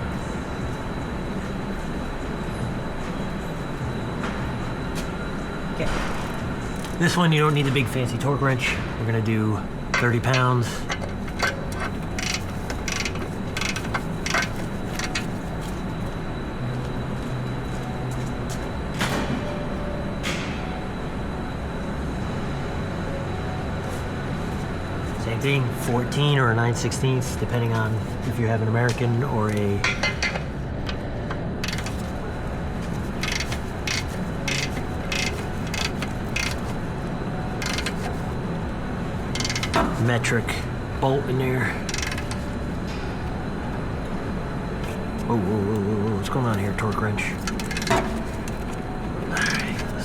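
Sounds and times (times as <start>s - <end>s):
steady background hum: 0.0s - 50.0s
wrench ratcheting: 10.0s - 15.3s, 31.6s - 32.1s, 33.2s - 36.8s, 37.6s - 38.2s, 39.4s - 40.0s, 41.8s - 42.5s
metallic clicks: 31.6s - 32.1s, 33.2s - 36.8s, 37.6s - 38.2s.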